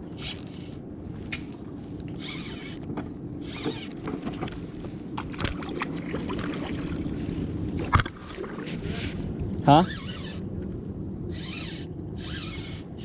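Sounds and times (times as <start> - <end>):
water against kayak hull: 1.2 - 9.3.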